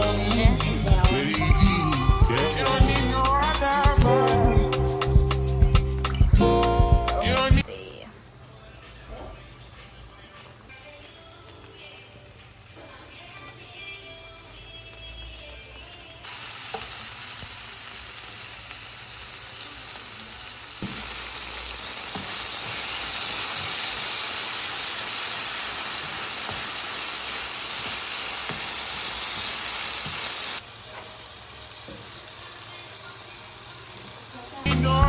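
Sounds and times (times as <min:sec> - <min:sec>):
food sizzling in a frying pan: 0:08.2 - 0:35.0.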